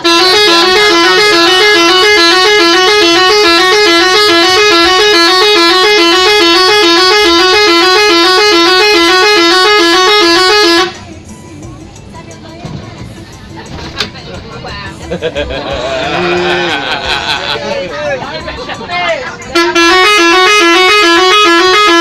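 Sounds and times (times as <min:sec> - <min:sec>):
musical air horn tune: 0:00.0 - 0:11.0, 0:19.5 - 0:22.0.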